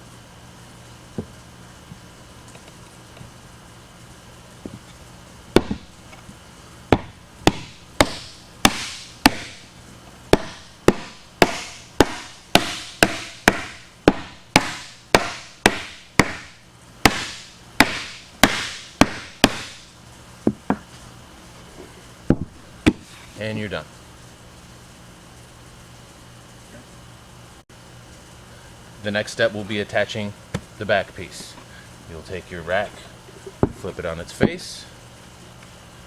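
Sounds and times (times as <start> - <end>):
rubber mallet striking wood: 5.5 - 5.9, 6.9 - 9.6, 10.3 - 19.8, 22.3 - 23.0.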